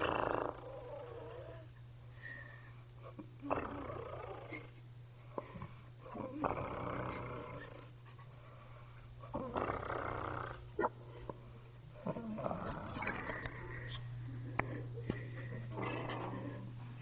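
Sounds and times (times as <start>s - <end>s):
woman snoring: 0.0s - 1.6s, 3.4s - 4.7s, 6.1s - 7.6s, 9.4s - 10.6s
steady low hum: 0.0s - 17.0s.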